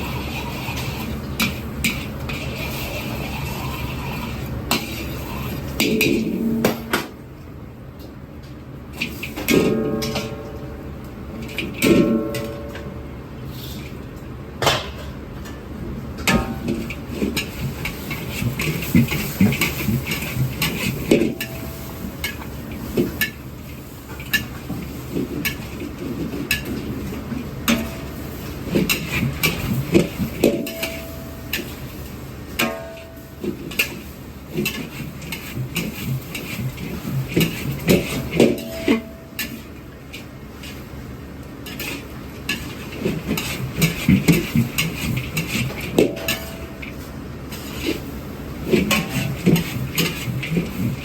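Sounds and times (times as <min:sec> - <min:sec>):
metallic clangs: 0:09.4 - 0:10.8.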